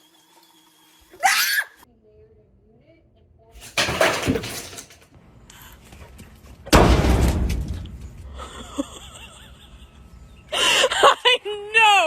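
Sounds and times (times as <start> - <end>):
loud bang: 6.7 - 8.3.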